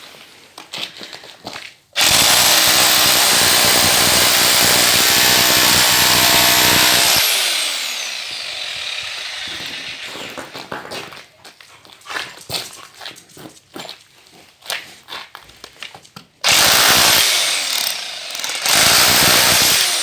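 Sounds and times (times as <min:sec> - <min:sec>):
hammer drill running: 0:02.0 - 0:10.6, 0:16.5 - 0:20.0.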